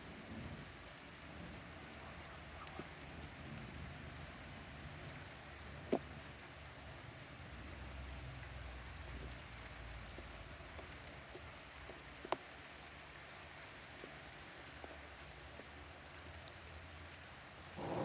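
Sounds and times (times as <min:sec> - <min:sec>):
steady rain: 0:00.0 - 0:18.0
water drip ticks: 0:01.5 - 0:04.4, 0:05.2 - 0:06.4, 0:07.6 - 0:17.2
distant thunder rumble: 0:17.8 - 0:18.0.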